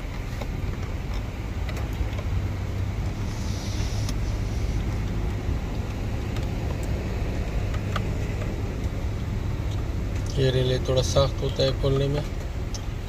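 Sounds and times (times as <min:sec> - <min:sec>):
low rumble of traffic: 0:00.0 - 0:13.0
faint clicks and taps: 0:04.8 - 0:12.9.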